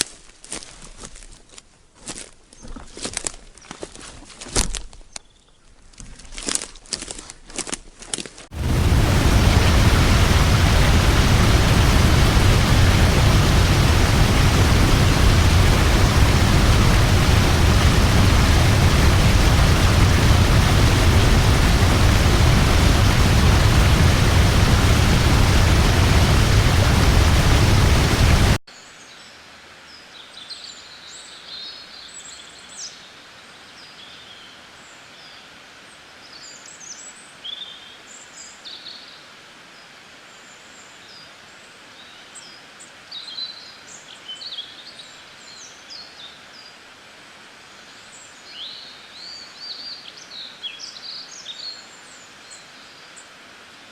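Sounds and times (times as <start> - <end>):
waterfall rushing: 8.5 - 28.6.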